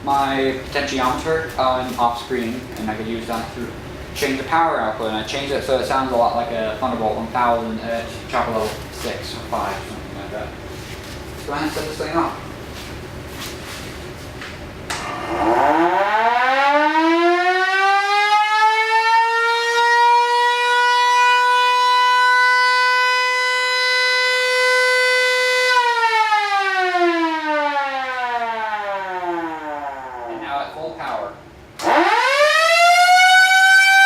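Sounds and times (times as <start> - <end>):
siren wailing: 15.0 - 30.7, 31.8 - 34.0.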